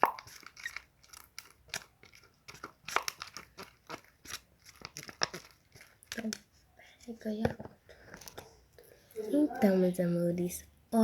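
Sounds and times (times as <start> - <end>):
slime stirred in a cup: 0.0 - 8.4.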